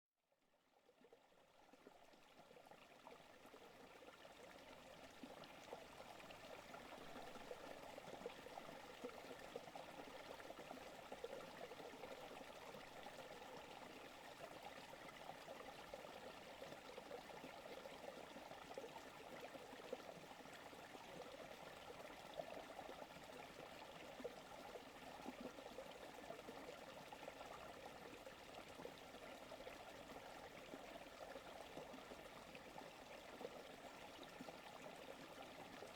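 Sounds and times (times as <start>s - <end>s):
creek water flowing: 1.4s - 35.9s.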